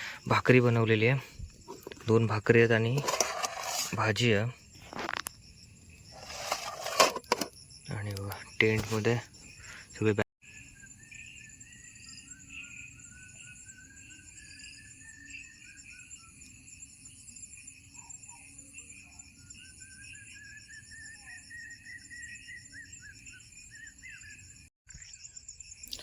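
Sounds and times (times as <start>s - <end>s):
insects trilling: 0.0s - 26.0s
faint wavering insect call: 7.5s - 26.0s.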